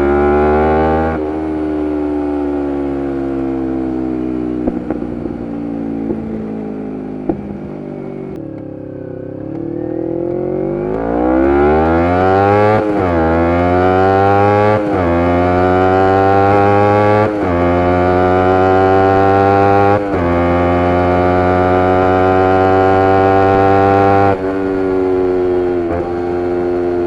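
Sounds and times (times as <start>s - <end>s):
motorcycle engine revving: 0.0s - 27.0s
sharp exhaust cracks: 4.6s - 8.6s, 11.8s - 27.0s.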